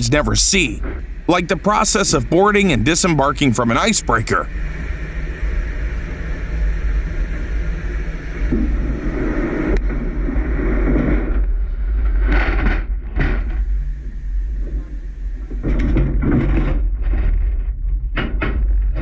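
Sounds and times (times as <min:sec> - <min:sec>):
ship engines rumbling: 0:00.0 - 0:04.5.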